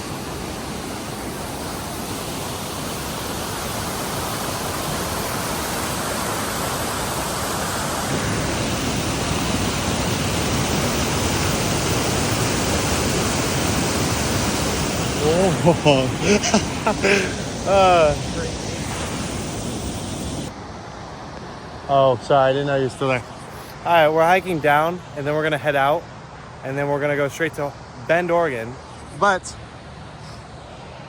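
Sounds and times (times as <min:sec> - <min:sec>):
waterfall rushing: 0:00.0 - 0:20.5.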